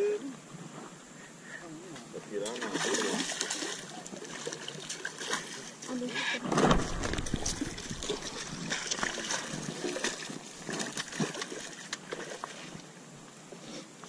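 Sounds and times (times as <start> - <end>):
water trickling and splashing: 1.9 - 6.1, 6.7 - 14.0
low thump: 6.5 - 8.4.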